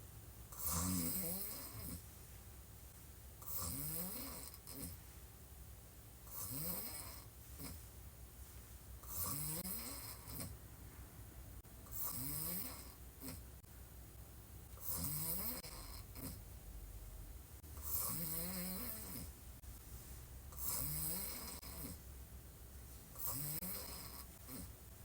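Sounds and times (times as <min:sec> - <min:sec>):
woman snoring: 0:00.6 - 0:02.0, 0:03.4 - 0:05.0, 0:06.3 - 0:07.8, 0:09.0 - 0:10.5, 0:11.9 - 0:13.4, 0:14.8 - 0:16.4, 0:17.8 - 0:19.3, 0:20.5 - 0:22.0, 0:23.2 - 0:24.7
soft breaths: 0:06.2 - 0:11.0, 0:14.7 - 0:25.0.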